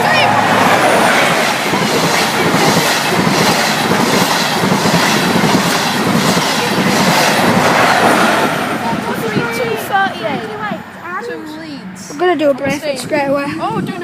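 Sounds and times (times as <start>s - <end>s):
train wheels clattering: 0.0s - 10.7s
passenger train passing: 0.0s - 12.6s.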